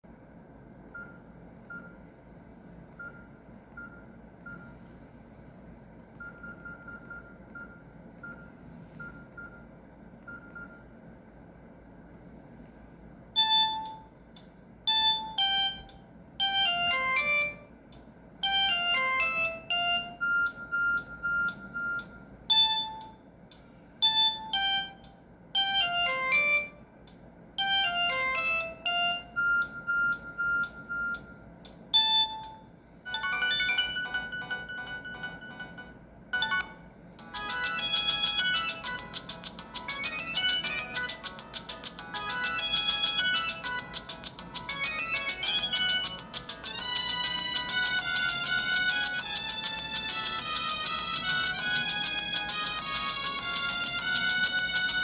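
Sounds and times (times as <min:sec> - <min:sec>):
mobile phone ringtone melody: 0:14.9 - 0:17.7, 0:18.4 - 0:23.1, 0:24.0 - 0:25.0, 0:25.6 - 0:26.8, 0:27.6 - 0:31.4, 0:32.0 - 0:55.0.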